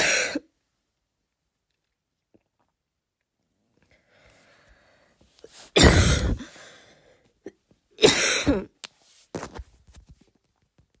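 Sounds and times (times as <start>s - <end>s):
woman forcing harsh coughs: 0.0s - 0.5s, 5.8s - 6.6s, 7.4s - 8.8s.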